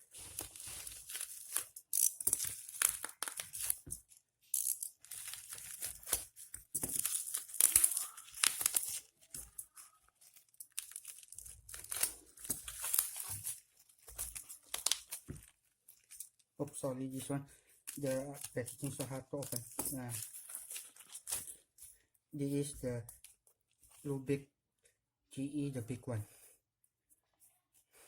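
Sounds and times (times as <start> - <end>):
packaging tearing and crinkling: 0.0 - 3.9, 4.5 - 16.2.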